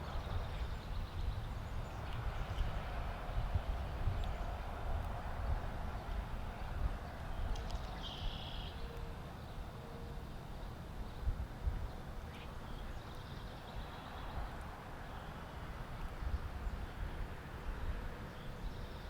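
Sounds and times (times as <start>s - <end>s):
short bird call: 8.0s - 8.8s.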